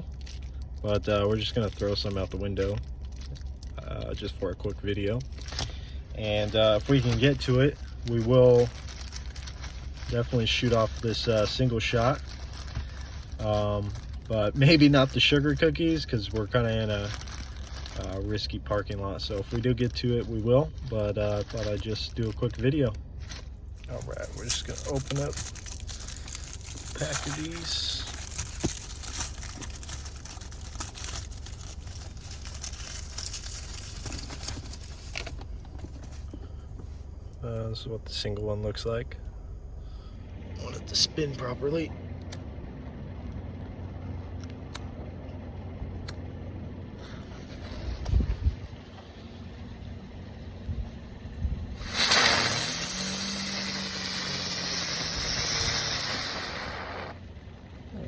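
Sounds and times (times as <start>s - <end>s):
low hum: 0.0s - 58.0s
packaging being torn open: 6.4s - 18.2s, 23.3s - 35.4s
firework hissing sparks: 51.8s - 57.2s.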